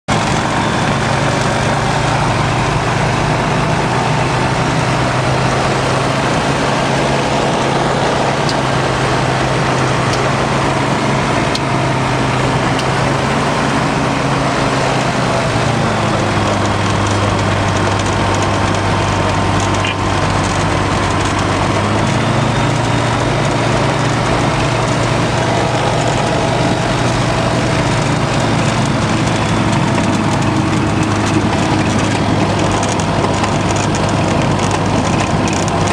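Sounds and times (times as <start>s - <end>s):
light aircraft engine running: 0.1s - 35.9s.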